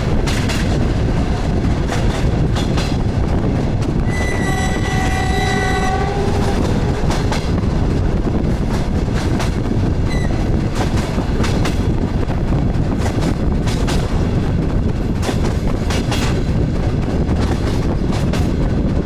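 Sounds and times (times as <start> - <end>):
wheels clacking over rail joints: 0.0 - 18.6
diesel train rumbling: 0.0 - 19.0
train horn chord: 4.0 - 7.6.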